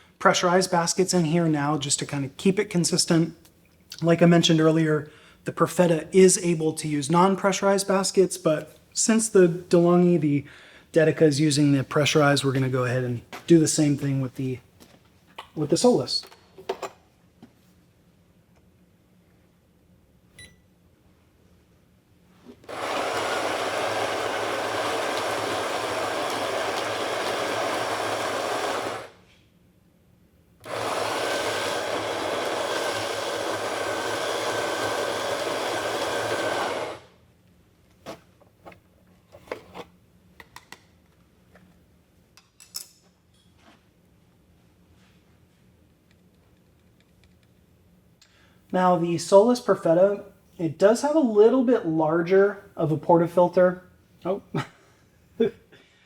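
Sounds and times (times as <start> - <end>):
electric coffee grinder grinding: 22.6 - 29.2, 30.6 - 37.1.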